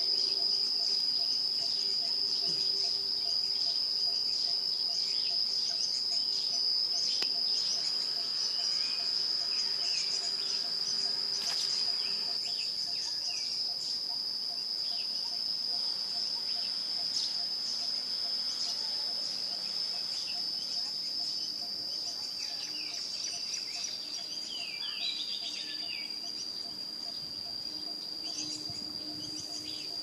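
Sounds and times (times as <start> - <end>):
high-pitched insect trill: 0.0 - 30.0
bird chirps: 19.5 - 30.0.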